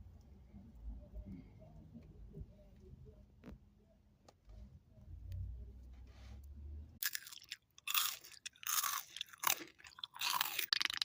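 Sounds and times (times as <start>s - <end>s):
chewing crunchy snacks: 7.0s - 11.0s.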